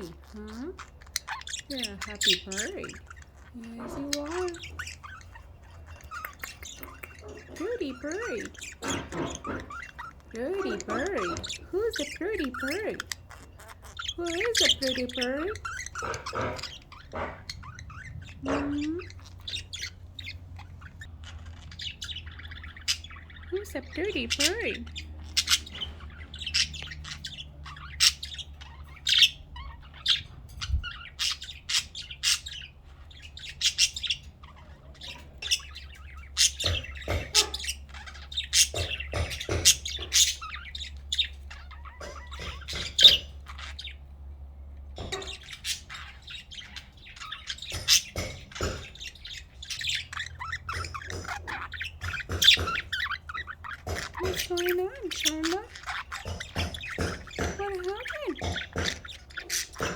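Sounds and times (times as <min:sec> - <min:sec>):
budgerigar chirping: 0:00.0 - 0:59.9.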